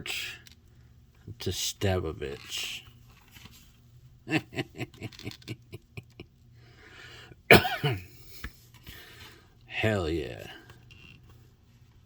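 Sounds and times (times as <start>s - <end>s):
man chuckling: 4.2s - 6.3s
man coughing: 7.5s - 8.2s.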